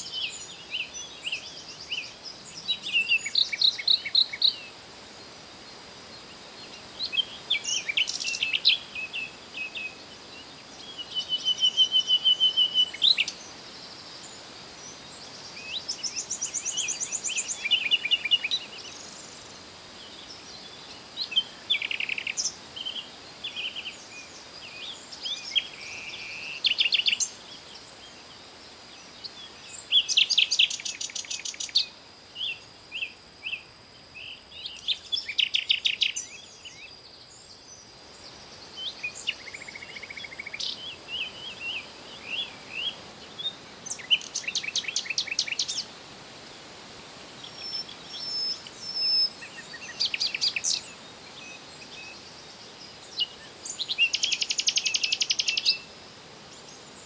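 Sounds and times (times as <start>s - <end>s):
songbird trilled phrases: 53.1s - 55.9s.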